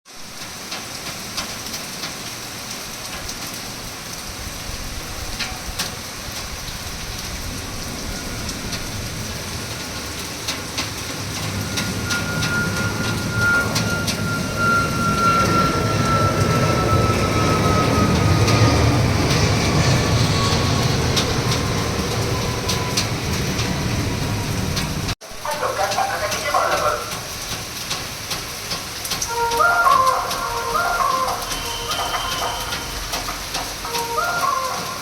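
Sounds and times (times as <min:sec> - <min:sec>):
steady rainfall: 0:00.1 - 0:35.0
aeroplane low rumble: 0:04.3 - 0:25.2
high falling whine: 0:11.1 - 0:25.2.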